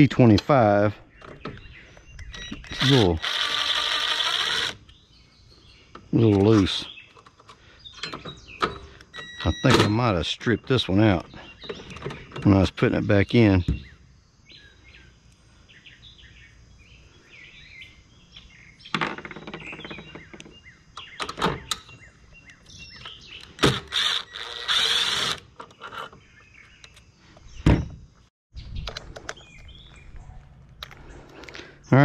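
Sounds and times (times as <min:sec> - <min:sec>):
birds chirping faintly: 0:00.0 - 0:32.0
tools knocking and clattering: 0:07.1 - 0:10.0, 0:18.9 - 0:20.6.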